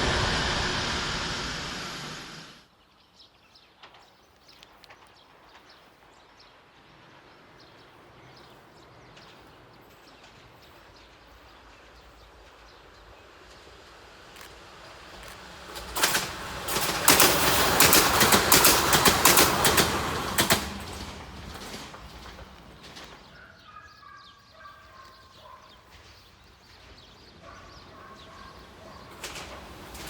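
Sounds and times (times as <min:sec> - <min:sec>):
train wheels clattering on rails: 0:03.8 - 0:23.4, 0:25.7 - 0:30.0
bird calls: 0:21.4 - 0:30.0.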